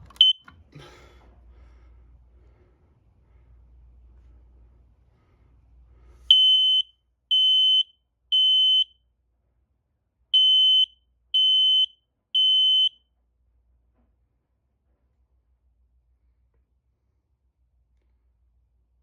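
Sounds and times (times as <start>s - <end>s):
smoke alarm beeping: 0.0s - 0.5s, 6.3s - 8.9s, 10.4s - 13.0s.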